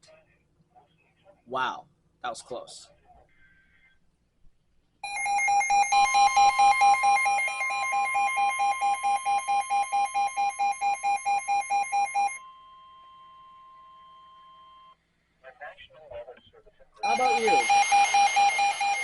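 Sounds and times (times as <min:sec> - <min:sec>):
rapid pulsing beep: 0:05.0 - 0:12.4, 0:17.0 - 0:19.0
steady alarm tone: 0:05.0 - 0:15.0, 0:17.0 - 0:19.0.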